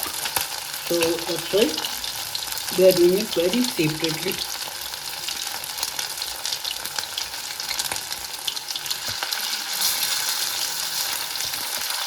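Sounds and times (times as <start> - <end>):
chicken sizzling in oil: 0.0 - 12.0.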